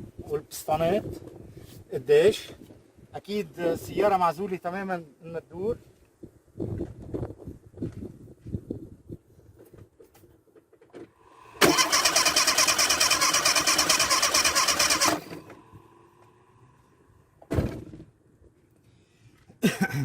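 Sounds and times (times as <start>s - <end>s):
engine cranking without firing: 11.2s - 16.9s.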